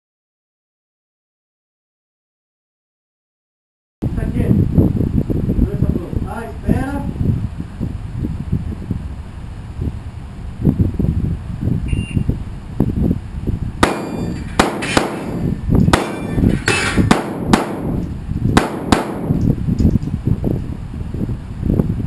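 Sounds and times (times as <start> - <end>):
wind rumbling on microphone: 4.0 - 22.0
shotgun shots: 13.8 - 18.0, 18.6 - 19.4.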